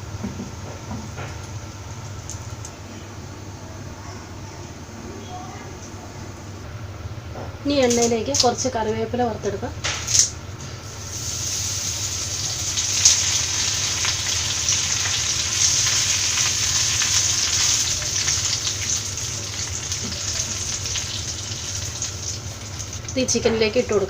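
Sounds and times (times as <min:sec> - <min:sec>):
leaves frying in hot oil: 0:07.7 - 0:09.2, 0:09.8 - 0:24.0.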